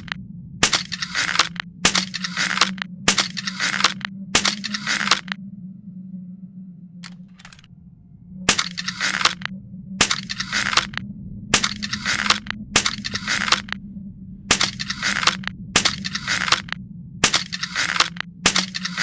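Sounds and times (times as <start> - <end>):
crossbow mechanism rasping strokes: 0.0 - 5.4, 8.5 - 11.0, 11.6 - 13.8, 14.5 - 19.0
sharp click: 0.0 - 5.4, 8.5 - 11.0, 11.6 - 13.8, 14.5 - 19.0
steady low hum: 0.0 - 19.0.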